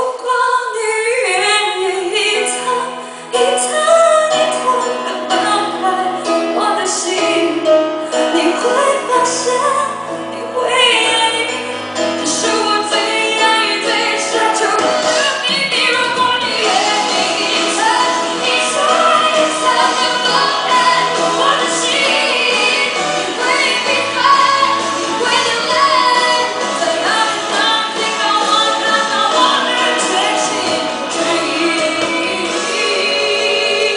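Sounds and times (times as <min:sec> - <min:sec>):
pop ballad with singing: 0:00.0 - 0:33.9.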